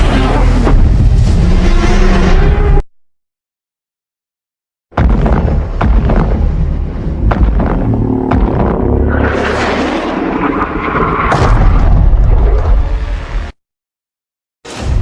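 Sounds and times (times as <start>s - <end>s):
heavy booming hits: 4.9s - 9.1s
deep rumble: 5.0s - 13.6s.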